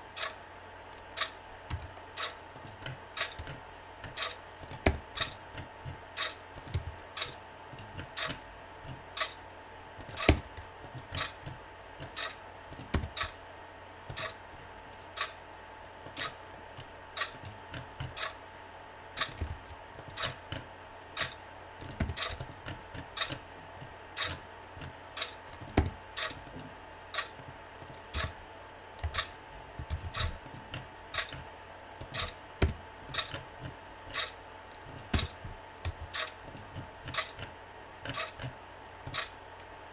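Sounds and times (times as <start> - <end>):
faint steady hum: 0.0 - 39.9
keyboard key clicks: 10.0 - 11.2, 12.7 - 13.4, 21.8 - 22.5, 27.8 - 28.4, 29.0 - 31.4, 32.0 - 33.4, 34.1 - 37.5
clock ticking: 28.0 - 28.4, 29.0 - 30.4, 31.1 - 31.4, 32.0 - 37.5, 38.1 - 39.3.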